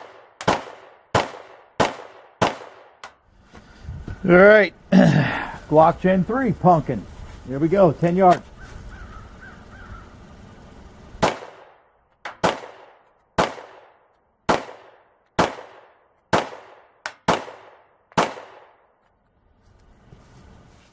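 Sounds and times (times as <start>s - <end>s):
pistol shots echoing: 0.0s - 3.1s, 11.2s - 18.9s.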